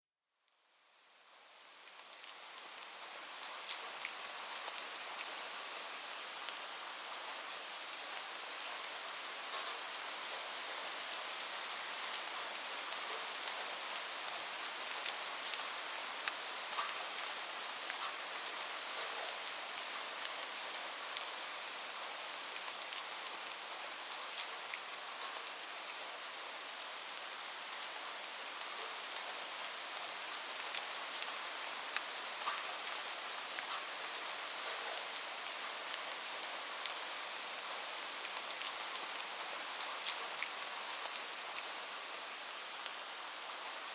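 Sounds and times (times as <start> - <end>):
raindrops ticking on a surface: 0.5 - 43.5
steady rain: 0.7 - 43.9.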